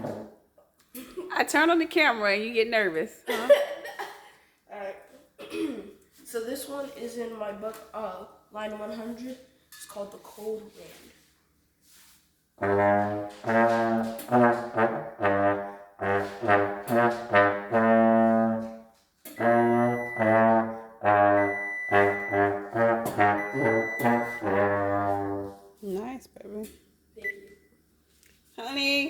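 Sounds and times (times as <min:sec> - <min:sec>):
low brass instrument playing tune: 0:12.6 - 0:25.7.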